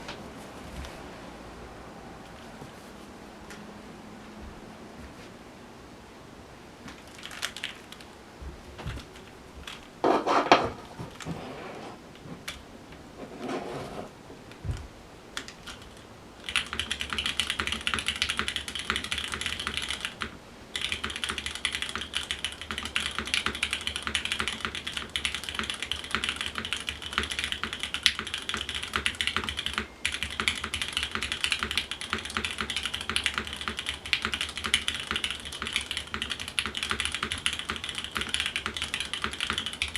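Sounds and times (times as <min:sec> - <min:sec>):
mechanical keyboard typing: 0:07.0 - 0:08.1, 0:15.4 - 0:39.9.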